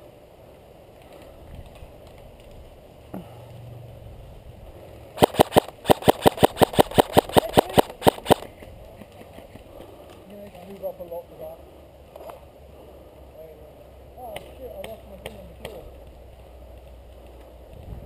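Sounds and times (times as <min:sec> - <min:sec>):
airsoft rifle firing rapidly: 0:05.2 - 0:08.5.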